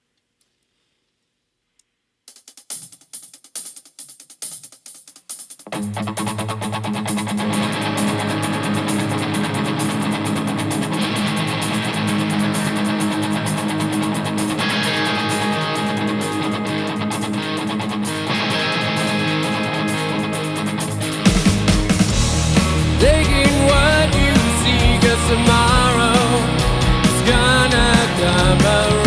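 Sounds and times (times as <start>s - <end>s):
rock band playing live: 5.7s - 29.0s
strummed guitar chords: 5.8s - 29.0s.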